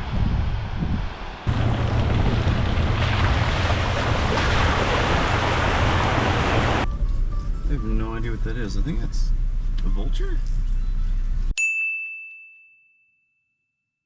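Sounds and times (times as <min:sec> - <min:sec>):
wind buffeting the microphone: 0:00.0 - 0:06.9
waterfall rushing: 0:01.5 - 0:06.8.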